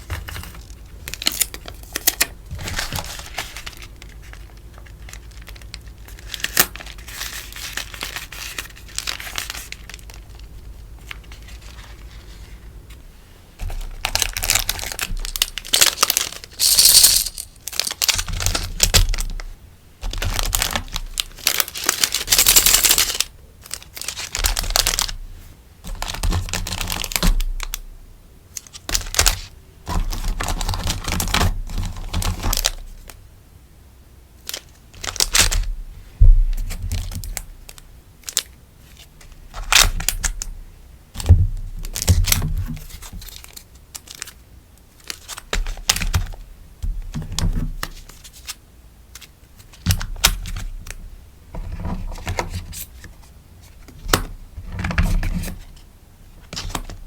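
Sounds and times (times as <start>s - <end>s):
sticker sheets crinkling: 0.1s - 13.0s, 13.6s - 19.4s, 20.1s - 25.2s, 41.8s - 44.4s, 45.0s - 46.4s.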